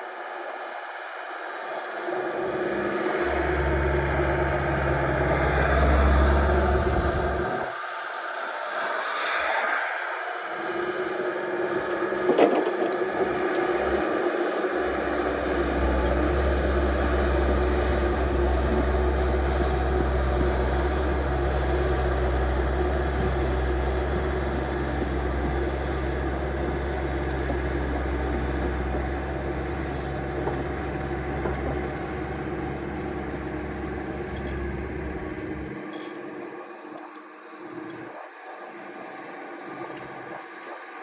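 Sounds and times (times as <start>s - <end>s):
vehicle engine rumbling: 2.3s - 7.8s, 10.8s - 38.1s.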